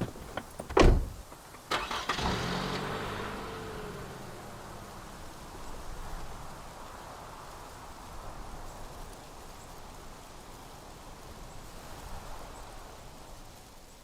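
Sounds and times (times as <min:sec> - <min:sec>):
steady hiss: 0:00.0 - 0:01.4.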